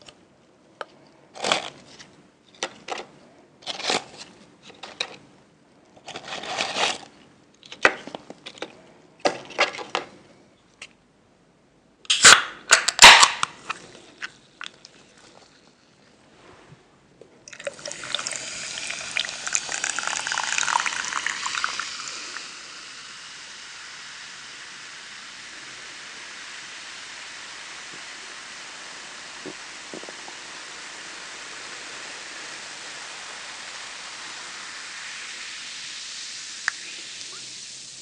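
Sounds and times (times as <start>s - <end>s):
food sizzling in a pan: 17.8s - 38.0s.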